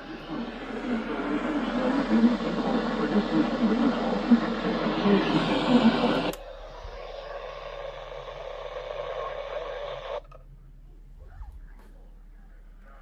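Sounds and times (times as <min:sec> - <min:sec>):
radio static hiss: 0:00.0 - 0:10.3.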